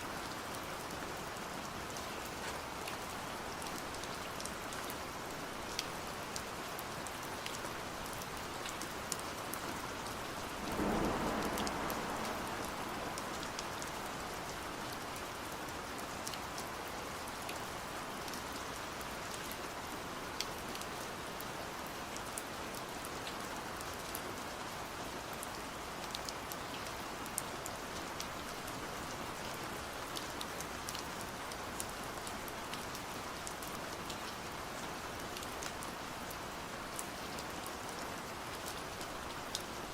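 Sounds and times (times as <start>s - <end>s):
steady rain falling: 0.0s - 39.9s
deep rushing swell: 10.4s - 14.8s.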